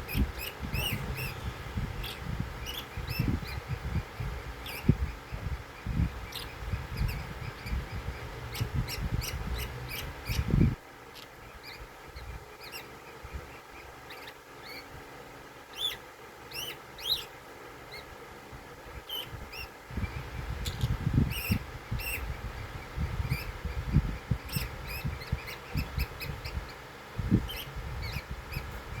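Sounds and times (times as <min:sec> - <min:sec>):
low uneven rumble: 0:00.0 - 0:13.9
bird chirps and squeaks: 0:00.0 - 0:15.0, 0:15.7 - 0:18.2, 0:19.0 - 0:29.0.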